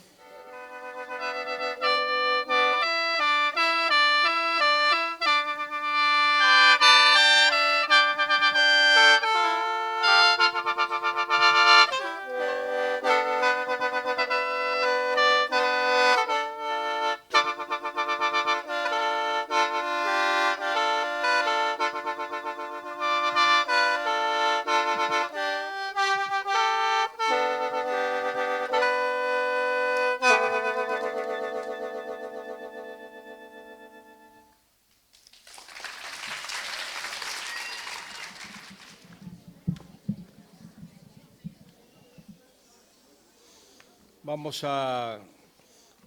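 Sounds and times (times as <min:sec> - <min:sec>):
mouth organ playing sustained chords: 0:00.0 - 0:34.6.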